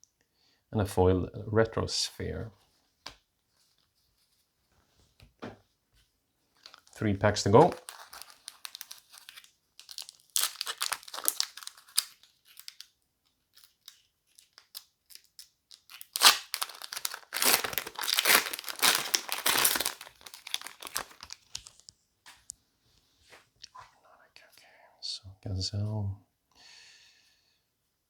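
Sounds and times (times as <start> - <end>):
foil wrapper tearing and crinkling: 6.6 - 21.9.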